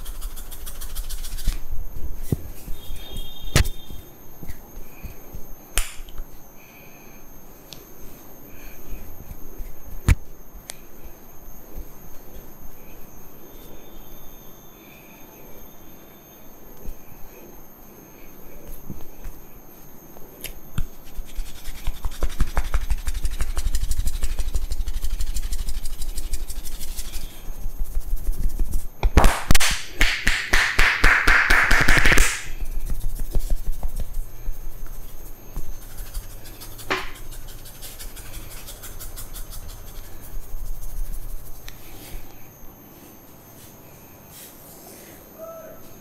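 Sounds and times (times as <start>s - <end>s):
scratchy rubbing of hair: 0.0s - 1.6s, 21.0s - 28.9s, 31.9s - 41.7s
hands tapping and rubbing head: 21.5s - 24.9s, 27.8s - 40.0s.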